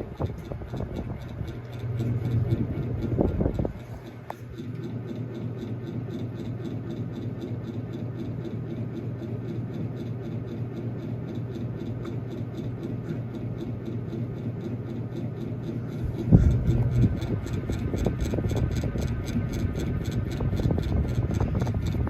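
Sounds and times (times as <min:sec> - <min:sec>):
air rushing from fan blades: 0:00.0 - 0:04.6, 0:15.7 - 0:22.0
faint ticking: 0:00.0 - 0:05.4, 0:11.0 - 0:22.0
ceiling fan motor hum: 0:00.0 - 0:22.0.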